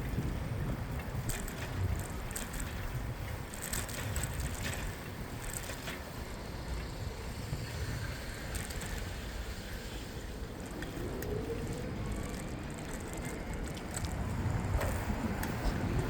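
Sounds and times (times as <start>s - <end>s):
bicycle tyre noise: 0.0s - 16.0s
traffic noise: 0.0s - 16.0s
wind rumble on microphone: 0.0s - 16.0s
small clicks and rattles: 0.9s - 6.9s, 8.4s - 9.4s, 10.6s - 15.8s.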